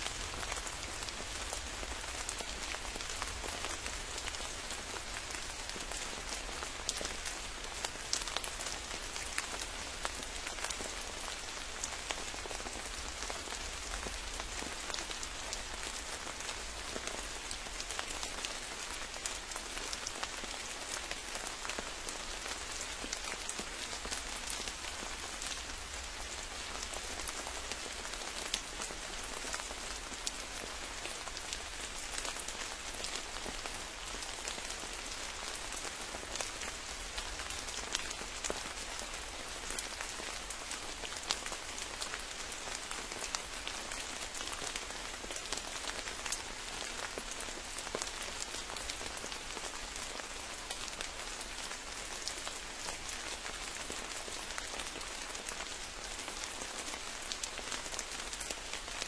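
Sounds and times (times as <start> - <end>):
rain drops pattering on leaves: 0.0 - 59.0.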